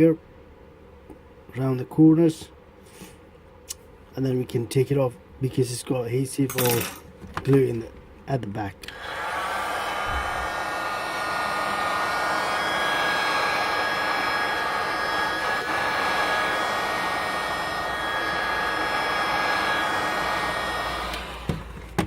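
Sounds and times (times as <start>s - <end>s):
high fan whine: 0.0s - 22.0s
heat gun blowing air: 8.8s - 22.0s.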